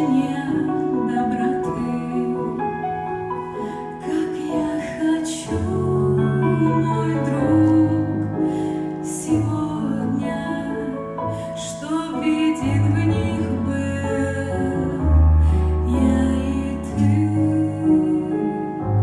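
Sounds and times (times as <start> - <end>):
woman singing: 0.0 - 19.0
keyboard and bass accompaniment: 12.4 - 19.0.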